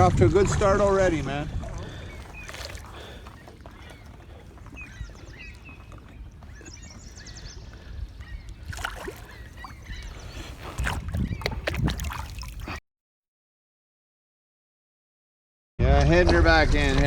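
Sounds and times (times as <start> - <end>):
wind rumble on microphone: 0.0 - 12.8
paddle splashing water: 0.4 - 12.8
paddle knocking against hull: 8.6 - 12.6.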